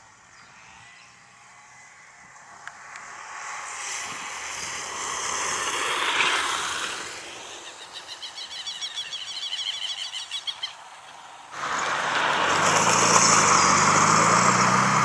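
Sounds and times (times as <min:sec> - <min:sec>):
passing vehicle: 0:00.0 - 0:15.0
fast high chirps: 0:07.5 - 0:10.8.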